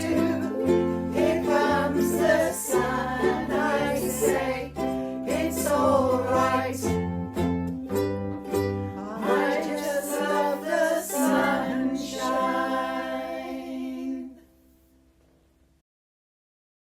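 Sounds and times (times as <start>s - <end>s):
voices singing in harmony: 0.0s - 7.5s, 8.7s - 14.5s.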